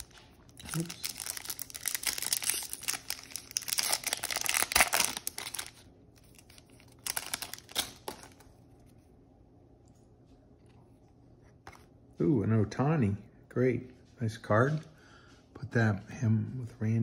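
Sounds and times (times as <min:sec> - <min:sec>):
wrapper crinkling and tearing: 0:00.0 - 0:08.5.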